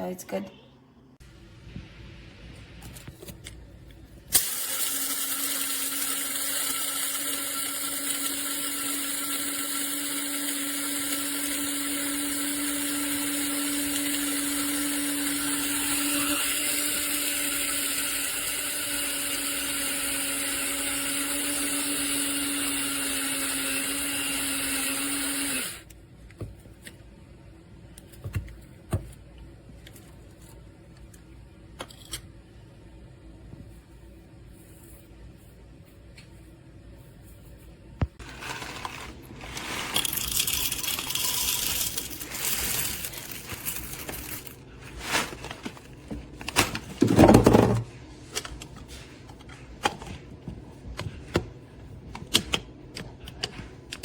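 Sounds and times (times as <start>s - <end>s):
coffee grinder whine: 4.3s - 25.9s, 38.2s - 45.8s.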